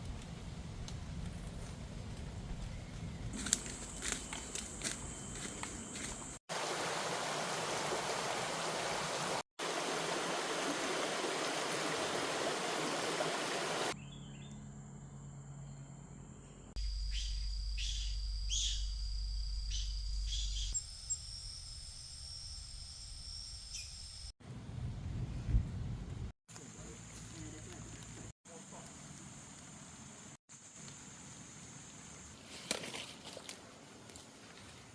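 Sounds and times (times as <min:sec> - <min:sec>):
high-pitched insect drone: 0:03.4 - 0:06.4, 0:15.4 - 0:24.3
running water: 0:06.5 - 0:13.9
birds chirping: 0:16.8 - 0:21.3.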